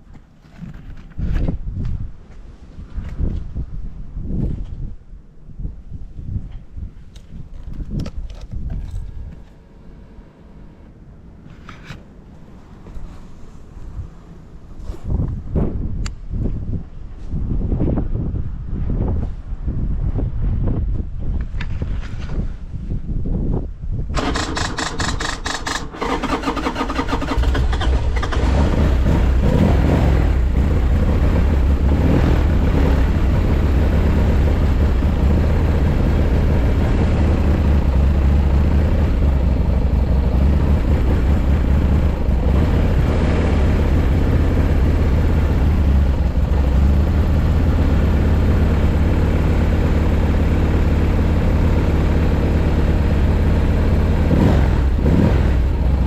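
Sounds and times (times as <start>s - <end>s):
motorcycle engine throbbing: 24.2s - 56.0s.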